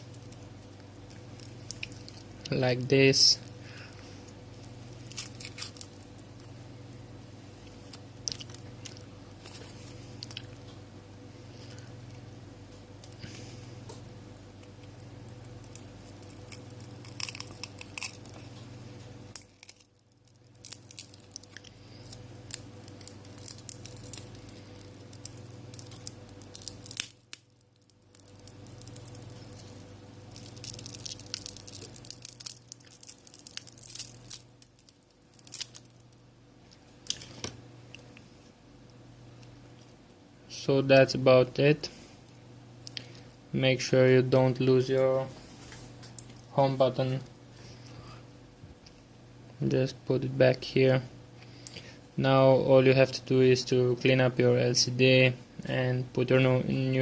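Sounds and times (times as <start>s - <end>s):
steady low hum: 0.0s - 57.0s
adhesive crackling and clicking: 4.6s - 6.2s, 14.5s - 18.4s, 19.3s - 36.0s.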